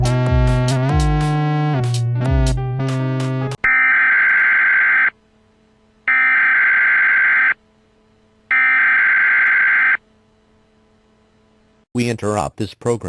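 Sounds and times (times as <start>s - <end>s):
screeching digital data tones: 6.1s - 7.6s, 8.5s - 10.0s.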